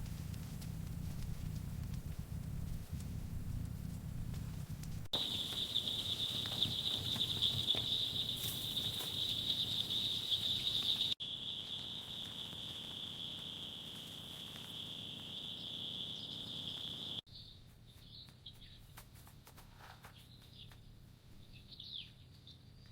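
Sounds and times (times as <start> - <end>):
faint low rumble: 0.0 - 16.0
high-pitched insect trill: 5.2 - 17.2.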